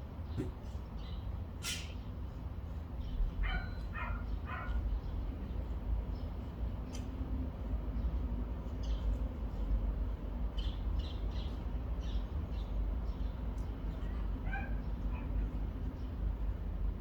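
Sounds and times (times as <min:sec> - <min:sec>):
dog barking: 0:03.4 - 0:04.8, 0:14.4 - 0:15.3.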